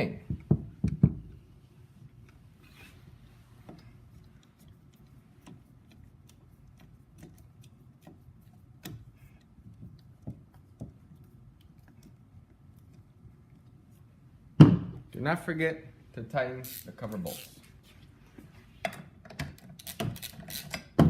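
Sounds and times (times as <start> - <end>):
loud knocks: 14.6 - 15.0
screwdriver clicking on chain: 19.8 - 20.9.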